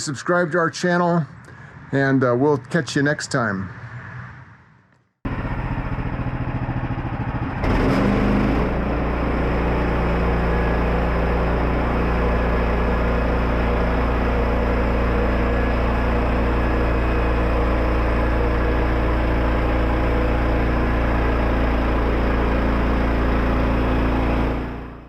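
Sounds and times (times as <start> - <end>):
engine droning: 5.3 - 25.0.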